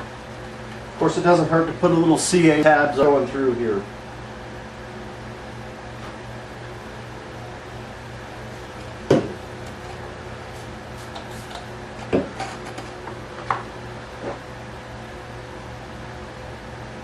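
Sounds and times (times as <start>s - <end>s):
steady electrical hum: 0.0s - 17.0s
tools knocking on work table: 9.1s - 9.4s, 12.0s - 12.8s.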